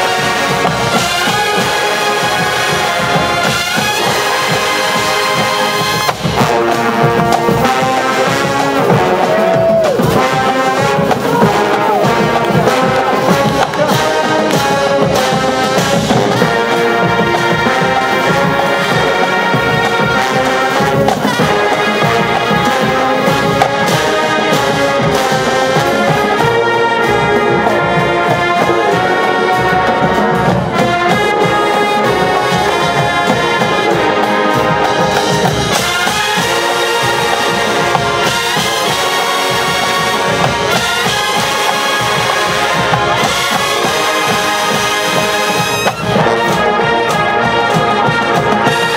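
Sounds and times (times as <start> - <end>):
marching band brass: 0.0 - 48.9
steady drum beat: 0.0 - 48.9.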